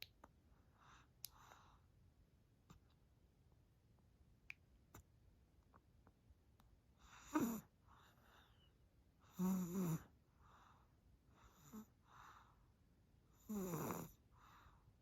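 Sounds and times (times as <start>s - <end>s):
soft breaths: 0.4s - 2.1s, 6.9s - 15.0s
baby snoring: 7.2s - 7.7s, 9.3s - 10.1s, 13.4s - 14.2s.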